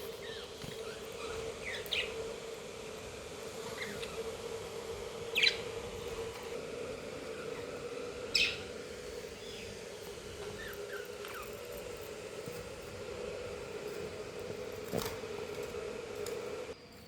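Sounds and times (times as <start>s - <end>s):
steady low hum: 0.0s - 16.8s
budgerigar chirping: 8.3s - 8.6s.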